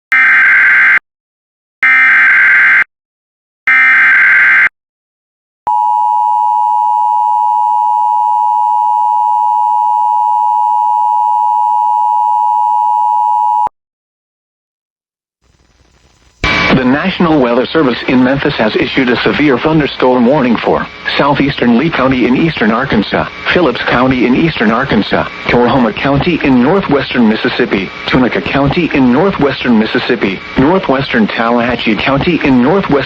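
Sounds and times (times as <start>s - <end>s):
buzzing data bursts: 15.5s - 17.3s.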